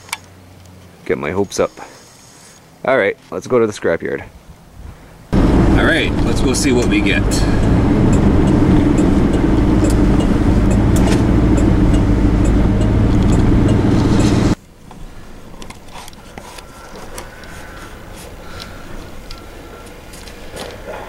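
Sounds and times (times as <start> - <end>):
vehicle engine and road noise: 0.0 - 3.4, 4.4 - 18.4.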